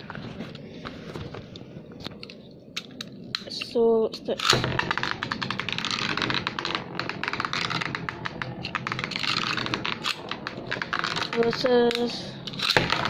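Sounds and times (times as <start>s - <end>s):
spinning tops clashing clicks: 4.4s - 13.0s.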